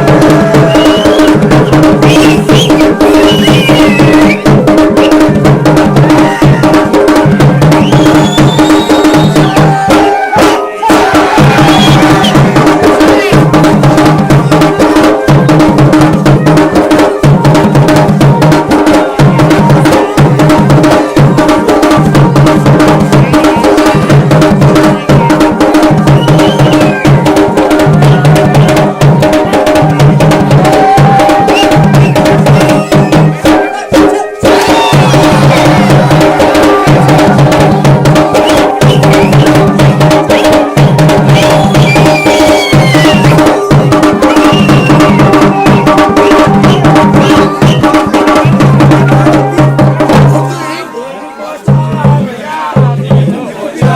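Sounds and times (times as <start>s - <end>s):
drums playing fast rhythm: 0.0s - 53.9s.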